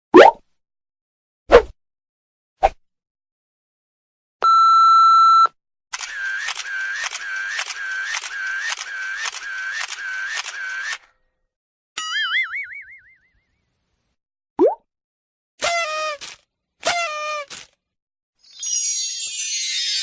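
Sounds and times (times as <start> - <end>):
censor beep: 4.4 - 5.6
quick pops: 15.6 - 17.8.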